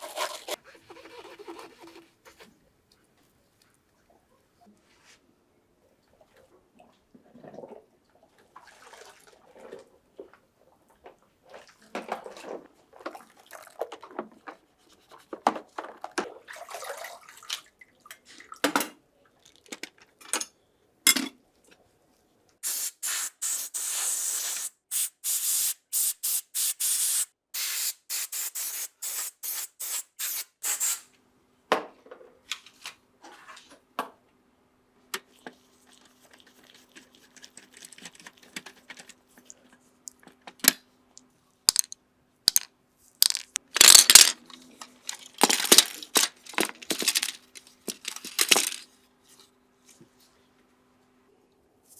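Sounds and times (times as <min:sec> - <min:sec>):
short hissing spray bursts: 0:22.6 - 0:31.1.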